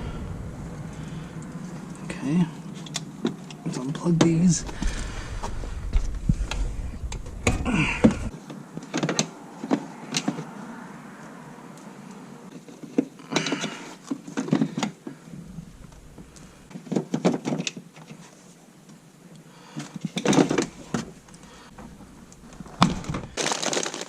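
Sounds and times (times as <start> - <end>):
plastic knocks and rustling: 21.8 - 24.0.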